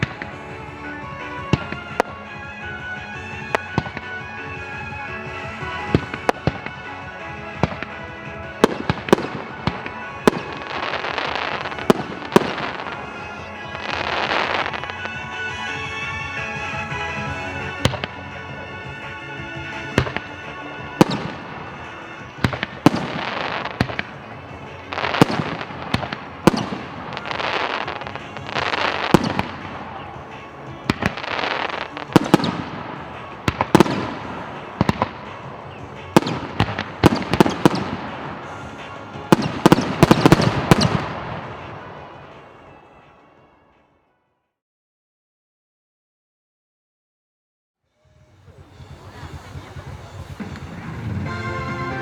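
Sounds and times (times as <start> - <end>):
fireworks bangs: 0.0 - 43.2, 48.1 - 52.0
fireworks crackling and hissing: 0.0 - 43.2, 48.0 - 52.0.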